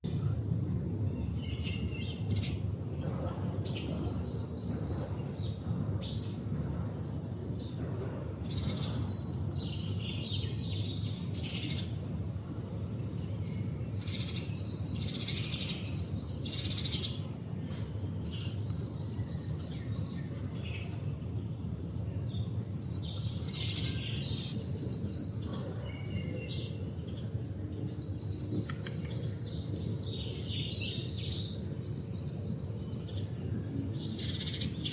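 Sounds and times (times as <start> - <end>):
low background rumble: 0.1 - 34.9
sparrow chirping: 3.6 - 12.1, 12.7 - 17.3, 22.0 - 34.9.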